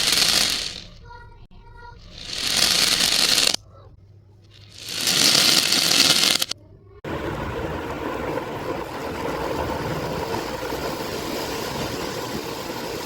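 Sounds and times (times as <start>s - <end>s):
reversed beads pouring: 0.0s - 0.9s, 2.0s - 3.6s, 4.5s - 6.6s.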